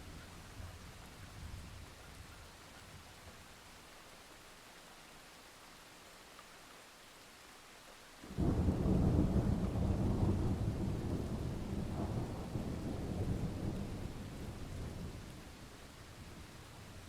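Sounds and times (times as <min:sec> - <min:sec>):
rain hiss: 0:00.0 - 0:17.0
thunder rumble: 0:08.3 - 0:17.0.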